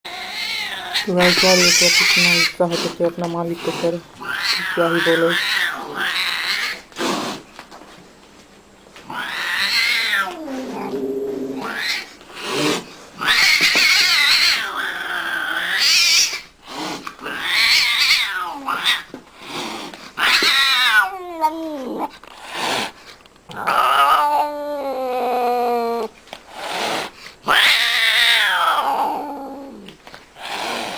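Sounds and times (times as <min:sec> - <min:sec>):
cat yowling: 0:00.1 - 0:06.8, 0:09.1 - 0:16.4, 0:17.2 - 0:19.1, 0:20.2 - 0:22.1, 0:23.5 - 0:26.1, 0:27.5 - 0:30.8.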